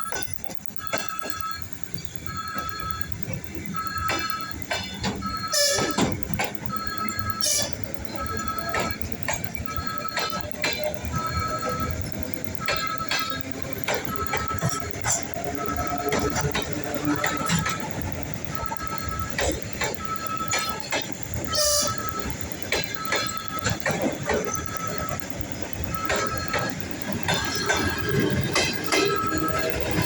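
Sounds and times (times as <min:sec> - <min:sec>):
short high beeps: 0:00.0 - 0:30.0
train wheels clattering over rails: 0:00.0 - 0:30.0.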